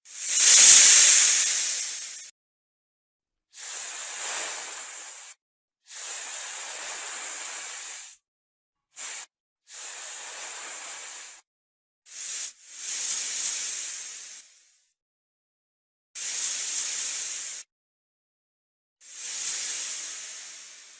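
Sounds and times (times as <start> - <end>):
snake hissing: 0.0 - 2.3, 3.6 - 8.1, 9.0 - 11.4, 12.1 - 14.6, 16.2 - 17.7, 19.0 - 20.9.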